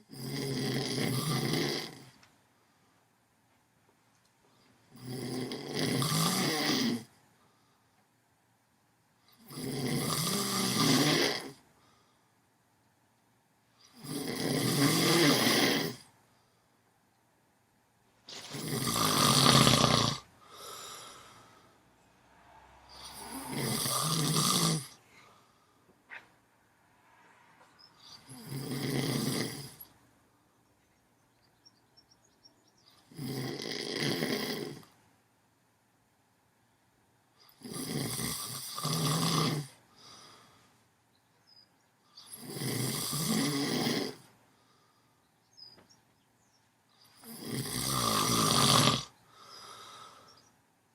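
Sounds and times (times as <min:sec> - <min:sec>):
person snoring: 0:00.0 - 0:02.2, 0:04.9 - 0:07.1, 0:09.4 - 0:11.6, 0:13.8 - 0:16.1, 0:18.3 - 0:25.6, 0:27.6 - 0:30.0, 0:33.0 - 0:34.9, 0:37.5 - 0:40.5, 0:42.2 - 0:44.3, 0:47.1 - 0:50.3
high whistling breath: 0:20.5 - 0:24.2, 0:26.6 - 0:28.4, 0:49.3 - 0:50.6.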